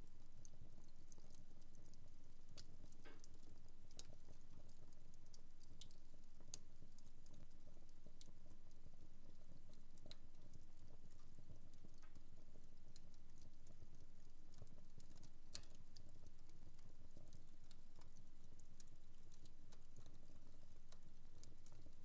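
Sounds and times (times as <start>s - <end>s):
fire crackling and popping: 14.6s - 22.0s.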